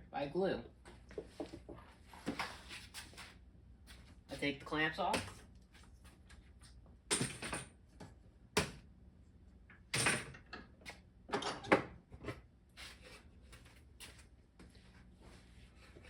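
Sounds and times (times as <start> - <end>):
clamps clacking and knocking: 11.3 - 12.0.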